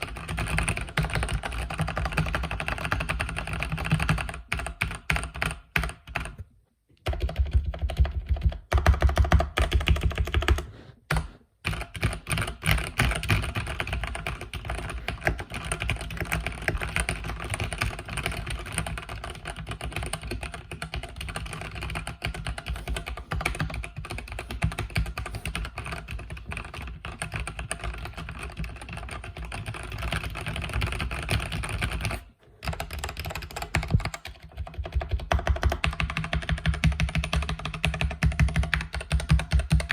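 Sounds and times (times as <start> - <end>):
mechanical keyboard typing: 0.0 - 6.4, 7.0 - 39.9.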